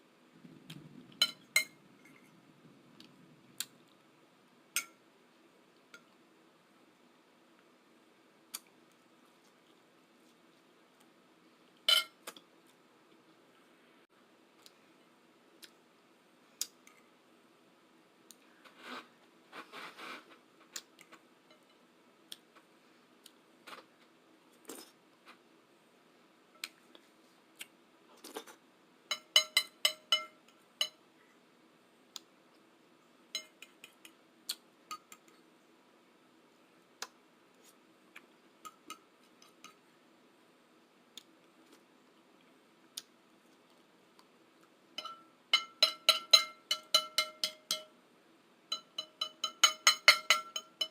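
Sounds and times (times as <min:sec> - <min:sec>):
cutlery scraping dishes: 0:11.9 - 0:12.2, 0:45.0 - 0:47.9, 0:48.7 - 0:50.9.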